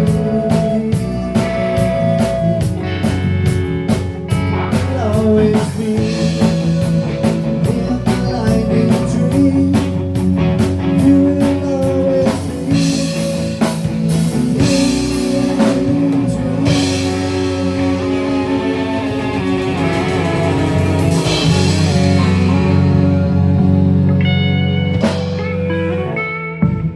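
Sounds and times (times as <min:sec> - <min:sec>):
bass guitar: 0:00.0 - 0:26.9
guitar chords: 0:00.0 - 0:26.9
drum and cymbal hits: 0:12.2 - 0:23.2.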